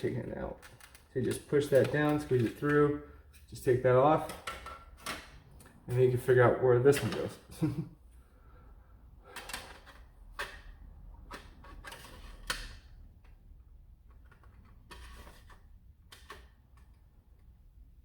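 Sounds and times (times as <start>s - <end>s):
plastic parts clicking: 0.6s - 2.8s.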